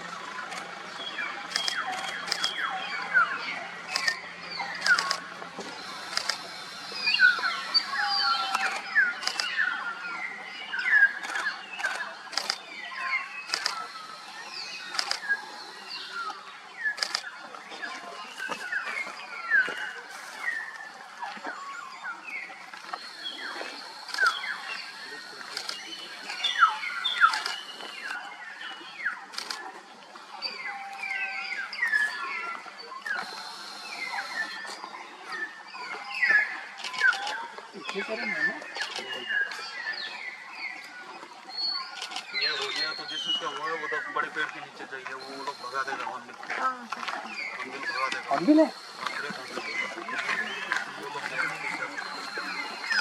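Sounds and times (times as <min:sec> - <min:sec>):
camera shutter clicks: 0:01.5 - 0:02.6, 0:03.9 - 0:04.2, 0:04.8 - 0:09.6, 0:11.2 - 0:12.6, 0:13.5 - 0:13.9, 0:14.7 - 0:15.4, 0:17.0 - 0:17.3, 0:24.0 - 0:24.5, 0:25.5 - 0:28.2, 0:29.4 - 0:29.6
mynas calling: 0:04.8 - 0:09.5.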